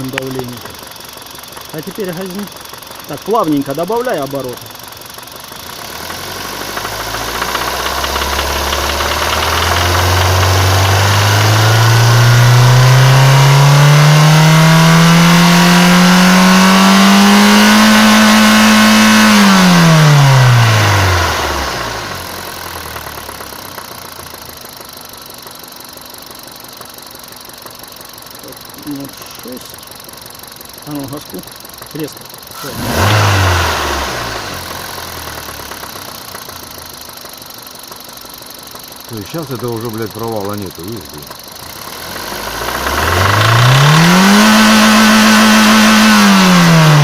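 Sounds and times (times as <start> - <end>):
car engine revving: 5.5 - 24.7, 28.4 - 37.0, 38.2 - 47.0.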